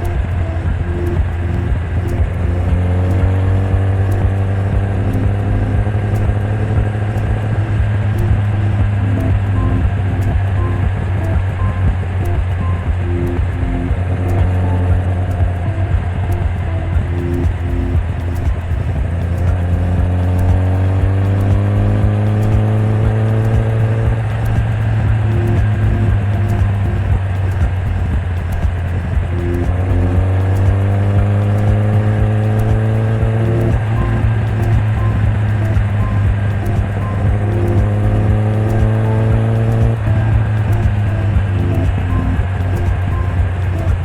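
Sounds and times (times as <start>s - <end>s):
motorcycle engine running: 0.0s - 44.0s.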